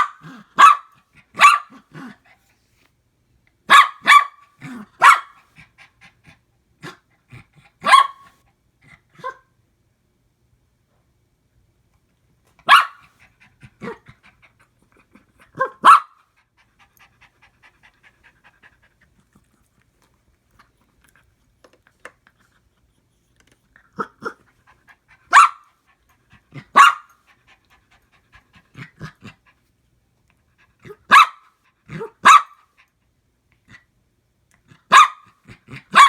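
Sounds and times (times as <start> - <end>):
dog barking: 0.0 - 1.8, 3.7 - 5.4, 7.8 - 8.3, 12.6 - 13.0, 15.6 - 16.2, 25.3 - 25.6, 26.7 - 27.1, 31.1 - 31.4, 32.0 - 32.6, 34.9 - 35.3
dog panting: 5.4 - 7.8, 13.0 - 15.6, 16.4 - 32.0
dog yipping: 7.8 - 8.2, 12.7 - 13.0, 25.3 - 25.6.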